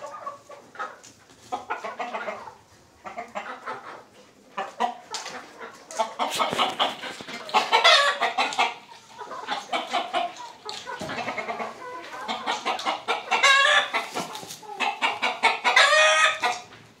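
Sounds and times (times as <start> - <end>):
chickens clucking: 0.0 - 17.0
chicken drawn-out call: 5.6 - 16.7.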